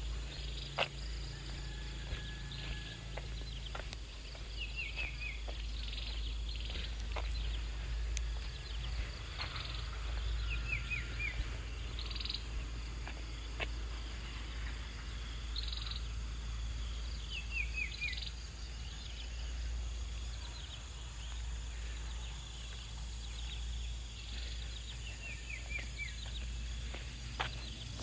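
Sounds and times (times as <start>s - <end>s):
low outdoor rumble: 0.0s - 28.0s.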